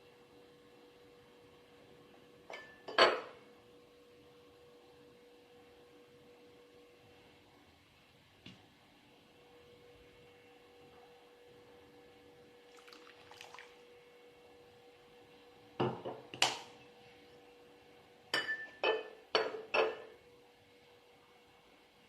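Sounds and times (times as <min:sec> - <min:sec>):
faint steady hum: 0:00.0 - 0:22.0
kitchenware clinking: 0:02.5 - 0:03.3, 0:18.3 - 0:20.1.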